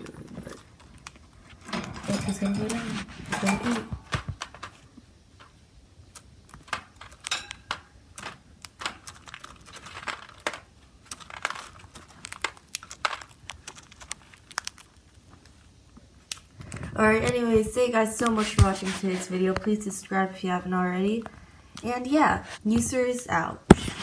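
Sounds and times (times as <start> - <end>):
birds cracking seed: 6.1 - 15.1.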